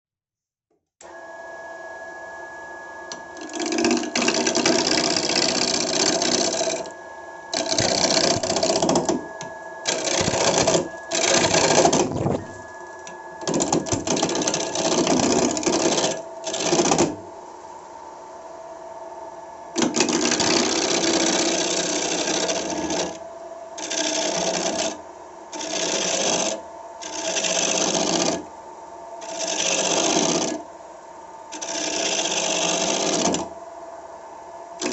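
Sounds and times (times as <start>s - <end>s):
wood lathe motor hum: 3.1s - 17.2s, 19.8s - 23.2s, 23.8s - 28.4s, 29.2s - 30.6s, 31.5s - 33.5s
turning tool cutting wood: 3.4s - 6.9s, 7.5s - 12.6s, 13.4s - 17.2s, 19.8s - 23.2s, 23.8s - 25.0s, 25.6s - 28.4s, 29.2s - 30.6s, 31.5s - 33.5s.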